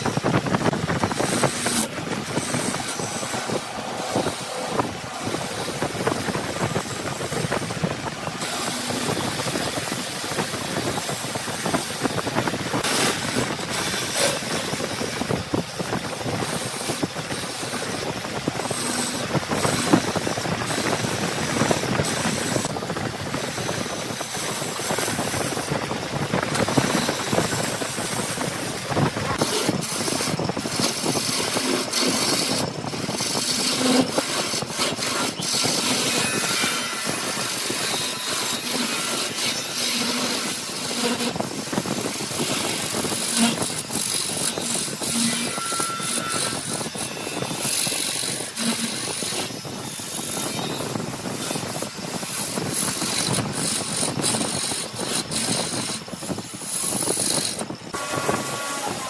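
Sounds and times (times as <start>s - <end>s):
wood lathe scraping hiss: 0.0s - 59.0s.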